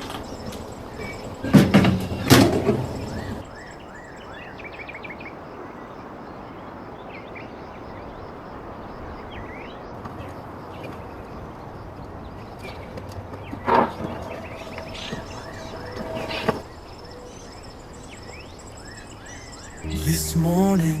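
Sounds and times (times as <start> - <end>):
outdoor background hiss: 16.6 - 21.0.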